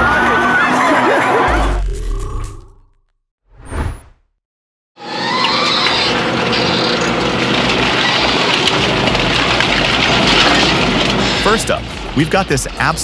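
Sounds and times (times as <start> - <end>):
industrial shredder running: 5.1 - 13.0.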